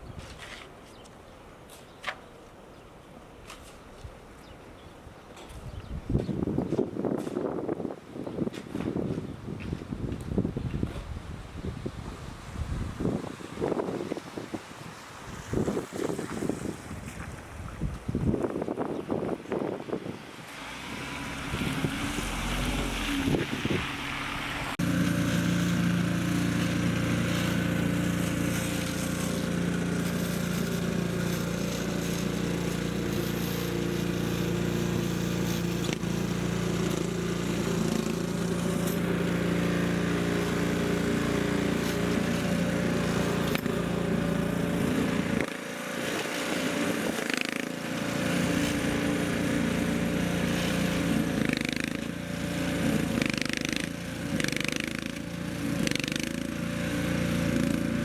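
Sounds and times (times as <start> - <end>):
small engine humming: 20.0 - 58.0.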